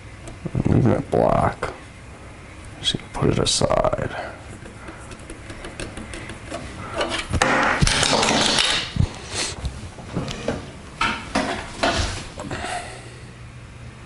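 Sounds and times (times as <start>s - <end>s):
plastic parts clicking and knocking: 4.6s - 8.9s.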